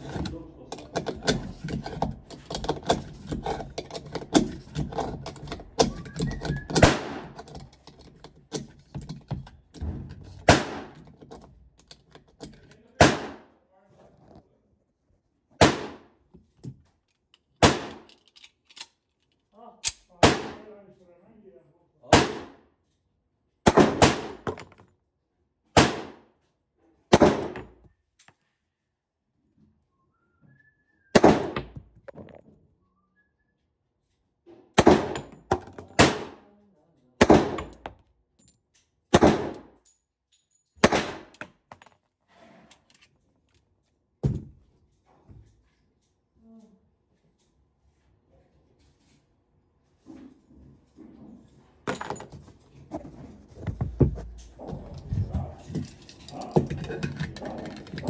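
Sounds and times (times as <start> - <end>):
handling clicks and knocks: 0.0 - 12.9, 16.3 - 19.5, 24.4 - 24.9, 31.6 - 32.4, 35.0 - 36.0, 51.9 - 58.0
muffled pistol shots with echo: 6.8 - 7.2, 10.5 - 10.9, 13.0 - 13.5, 15.6 - 16.1, 17.6 - 18.0, 20.2 - 20.6, 22.1 - 22.6, 23.7 - 24.4, 25.8 - 26.2, 31.2 - 31.6, 39.1 - 39.6.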